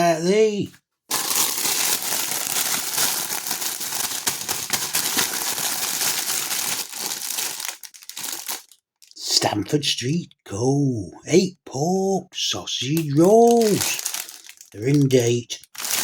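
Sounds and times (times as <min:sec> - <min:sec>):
plastic packaging crinkling: 0:01.1 - 0:09.2, 0:13.0 - 0:16.0.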